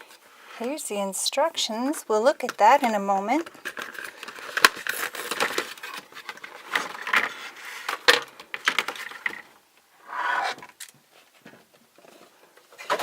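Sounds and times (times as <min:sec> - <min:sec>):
packaging clicks and crinkling: 0:02.3 - 0:09.5.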